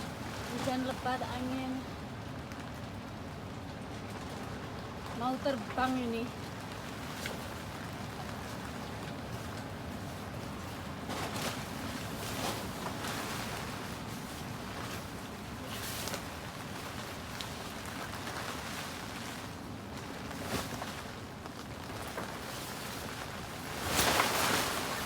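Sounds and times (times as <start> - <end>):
heavy rain: 0.0 - 11.0.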